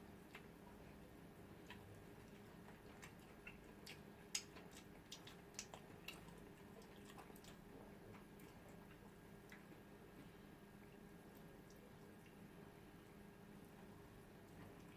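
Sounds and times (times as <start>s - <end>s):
low room hum: 0.0s - 14.9s
chewing mouth clicks and smacks: 1.6s - 9.9s.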